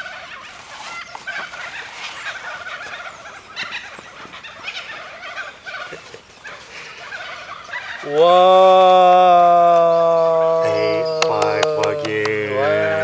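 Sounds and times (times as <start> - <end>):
kookaburras cackling: 0.0 - 8.5, 9.1 - 13.0.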